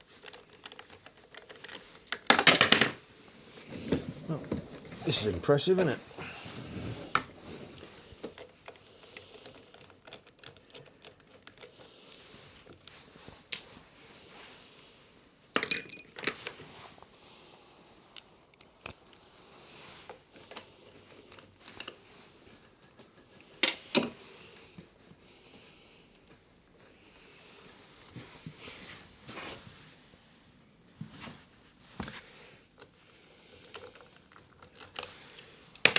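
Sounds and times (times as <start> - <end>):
metallic clicks of tools and parts: 18.2 - 19.2.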